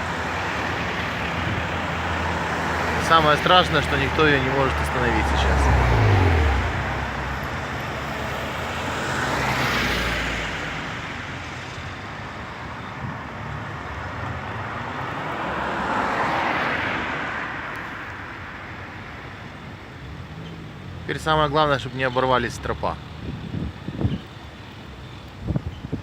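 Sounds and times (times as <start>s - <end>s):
steady traffic hum: 0.0s - 26.0s
vehicles passing: 0.0s - 26.0s.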